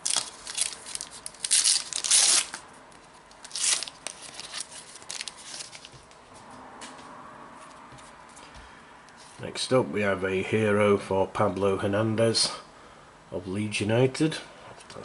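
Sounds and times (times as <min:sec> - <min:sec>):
card packet ripping open: 0:00.0 - 0:02.6, 0:03.4 - 0:06.0
wrapper crinkling: 0:00.0 - 0:06.0.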